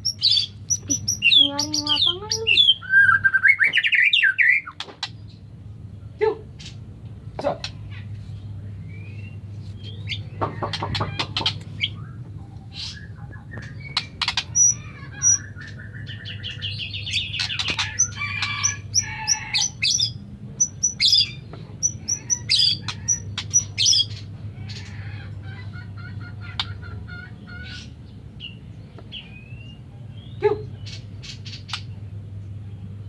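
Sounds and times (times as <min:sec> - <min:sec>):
bird singing whistles and trills: 0:00.0 - 0:04.8.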